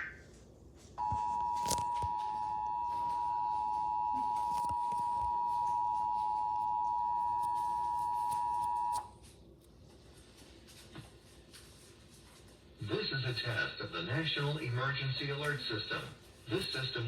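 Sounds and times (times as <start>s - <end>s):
two-tone alert signal: 1.0s - 9.0s.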